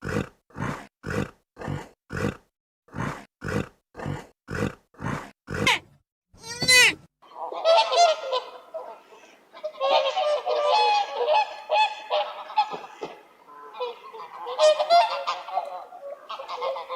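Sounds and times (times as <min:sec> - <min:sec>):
geese honking: 0:06.6 - 0:16.9.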